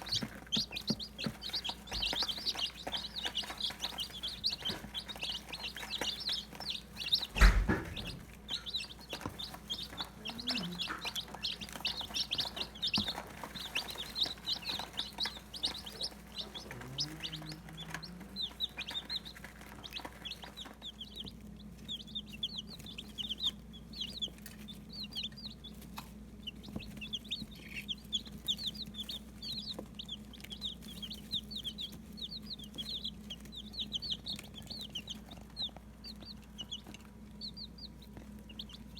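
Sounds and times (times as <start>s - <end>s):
chicks peeping: 0.0s - 38.9s
loud thump: 7.3s - 8.2s.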